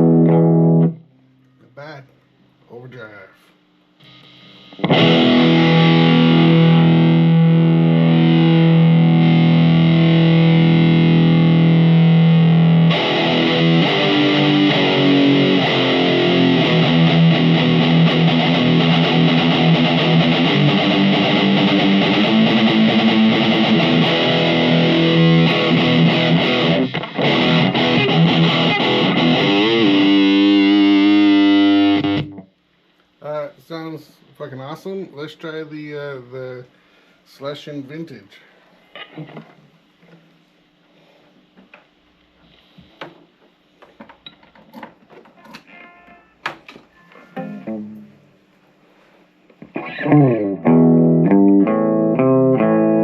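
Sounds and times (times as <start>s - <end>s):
distorted electric guitar: 0.0s - 1.1s, 4.0s - 32.6s, 38.9s - 39.7s, 45.3s - 48.4s, 49.6s - 53.0s.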